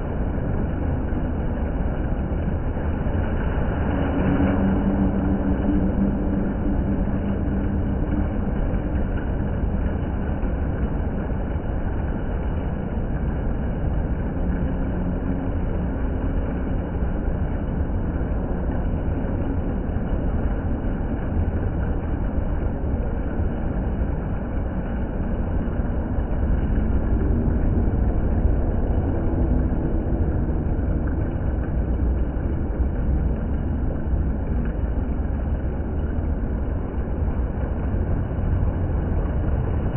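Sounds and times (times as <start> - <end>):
water fountain splashing: 0.0 - 39.9.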